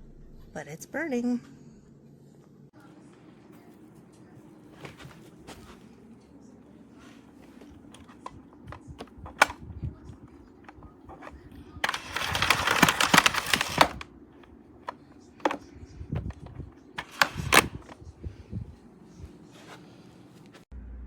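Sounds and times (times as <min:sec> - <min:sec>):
rustling noise: 0:06.9 - 0:14.0, 0:14.8 - 0:20.6
plastic parts clicking and knocking: 0:07.6 - 0:09.6, 0:10.6 - 0:18.0.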